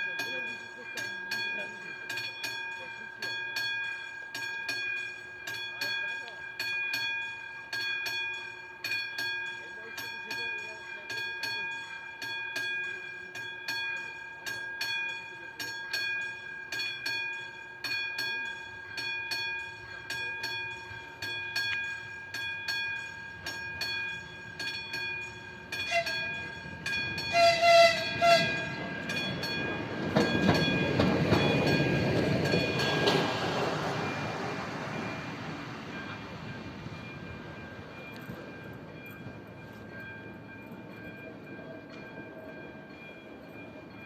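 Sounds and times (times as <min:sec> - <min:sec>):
level-crossing warning bell ringing: 0:00.0 - 0:44.0
train wheels rushing on rails: 0:16.8 - 0:44.0
locomotive horn blasts: 0:25.8 - 0:26.4, 0:27.3 - 0:28.7.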